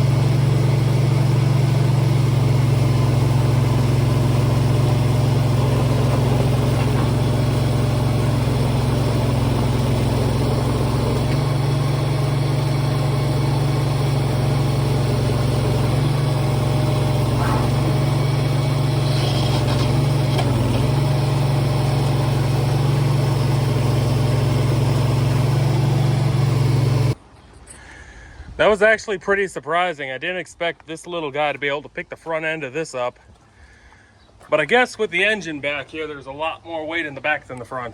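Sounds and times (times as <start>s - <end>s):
small machine engine running: 0.0s - 27.2s.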